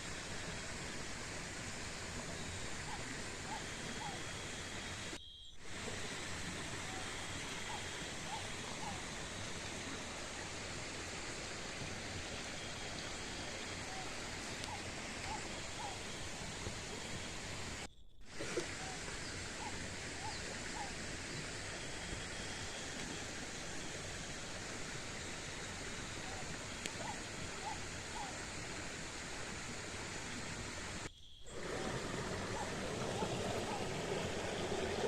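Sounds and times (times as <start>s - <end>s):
faint short chirps: 5.2s - 5.6s
steady rushing outdoor noise: 19.2s - 35.0s.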